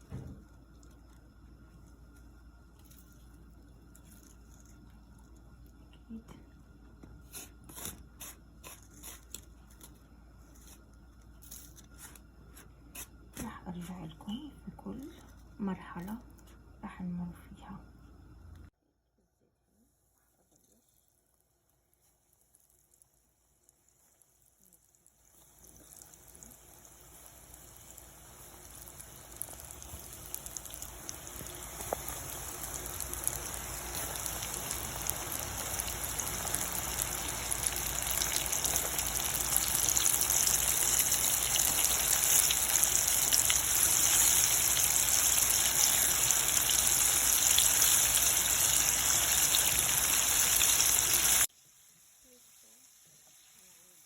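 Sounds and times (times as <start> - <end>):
chicken frying in hot oil: 0.0 - 6.2, 19.9 - 54.0.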